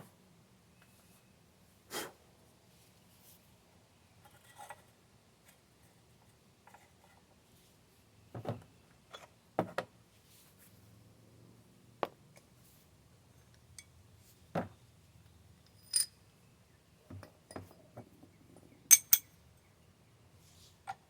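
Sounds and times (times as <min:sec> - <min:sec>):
metal tools clinking: 0:15.6 - 0:16.2, 0:18.9 - 0:19.4.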